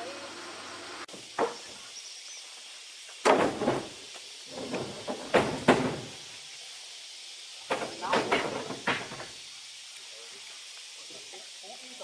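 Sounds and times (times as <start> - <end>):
sudden knocks and thumps: 4.5 - 6.1.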